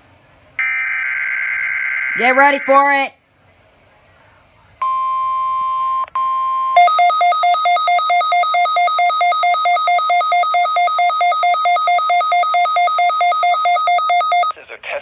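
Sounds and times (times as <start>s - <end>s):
pulsing two-pitch electronic alarm: 0.6s - 2.9s, 6.8s - 14.5s
steady warning alarm tone: 0.6s - 3.1s, 4.8s - 14.5s.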